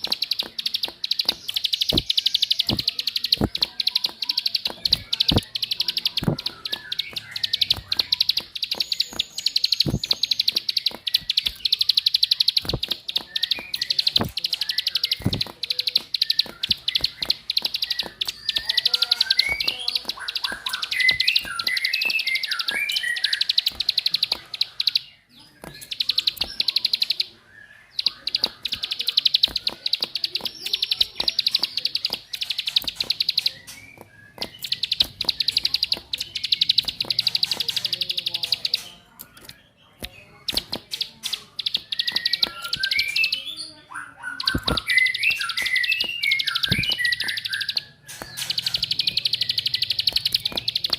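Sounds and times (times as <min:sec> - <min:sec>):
bird buzzing trill: 0:00.0 - 0:25.0
twittering bird chirps: 0:00.0 - 0:50.9.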